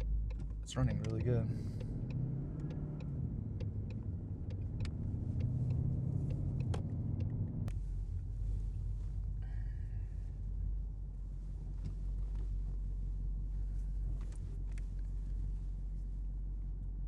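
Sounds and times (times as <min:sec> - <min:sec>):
light ticks: 0:00.0 - 0:07.8
car engine running: 0:00.0 - 0:17.0.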